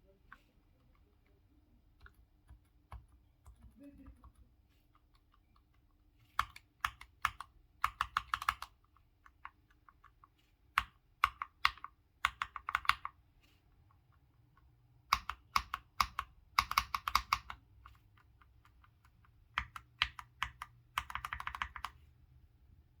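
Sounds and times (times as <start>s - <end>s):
mechanical keyboard typing: 2.0s - 22.0s.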